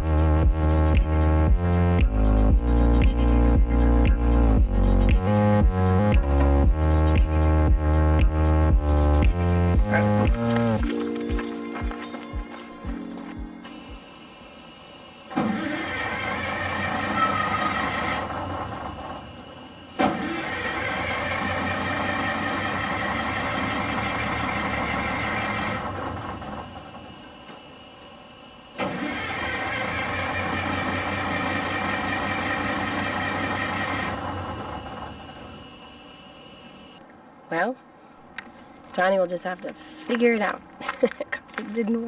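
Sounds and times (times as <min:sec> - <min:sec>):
bus engine cranking on starter: 0:13.1 - 0:37.0
sharp starter click: 0:28.8 - 0:34.6.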